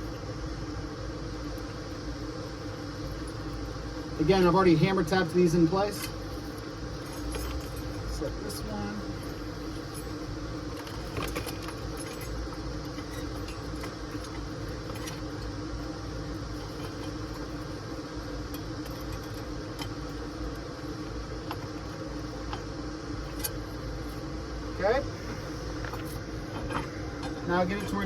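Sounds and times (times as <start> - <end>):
steady low hum: 0.0 - 28.0
metal nuts and washers clinking: 10.8 - 15.5.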